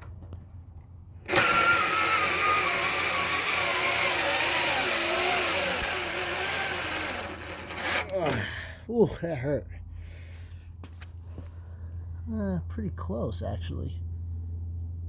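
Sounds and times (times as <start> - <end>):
cordless drill under heavy load: 1.3 - 8.7.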